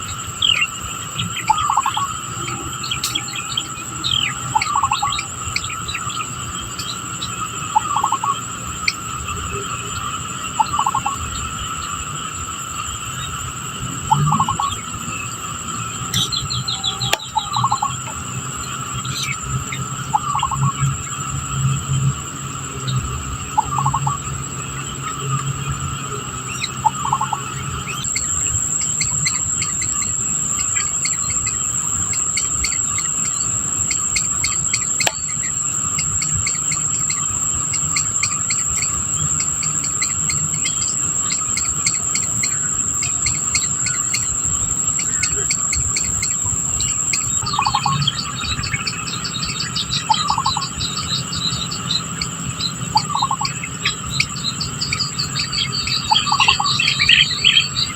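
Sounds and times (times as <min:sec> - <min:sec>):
high-pitched insect buzz: 0:00.0 - 0:57.9
rapid chirping: 0:00.0 - 0:57.9
falling bird call: 0:47.4 - 0:57.9.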